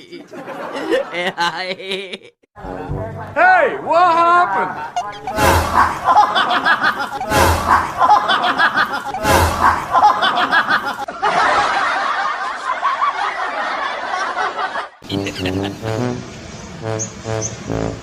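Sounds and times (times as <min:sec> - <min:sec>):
people laughing: 0:00.0 - 0:02.5, 0:04.5 - 0:15.9.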